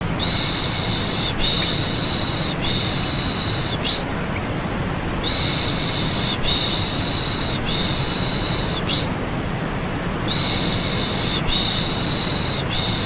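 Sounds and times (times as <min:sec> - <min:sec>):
steady white noise: 0:00.0 - 0:13.0.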